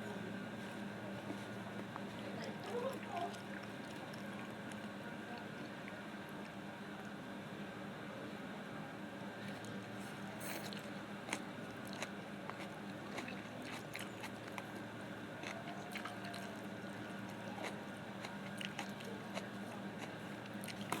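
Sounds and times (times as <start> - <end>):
steady low hum: 0.0 - 21.0
person chewing crunchy food: 10.4 - 21.0.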